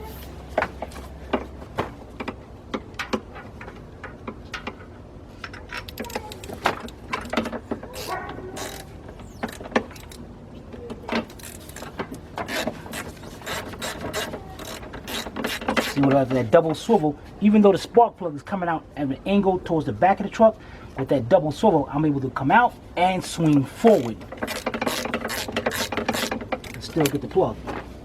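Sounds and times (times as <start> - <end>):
ratchet clicking: 5.4 - 10.2, 11.2 - 16.0, 24.3 - 27.2
tools knocking against engine: 24.0 - 27.2.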